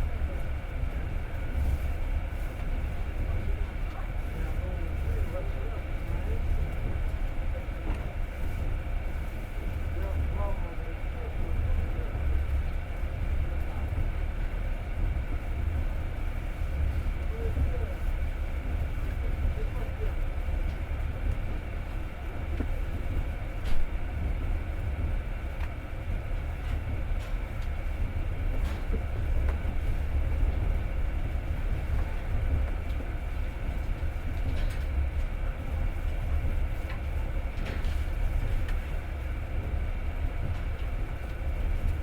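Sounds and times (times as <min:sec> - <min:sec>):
train wheels rumbling on rail: 0:00.0 - 0:42.0.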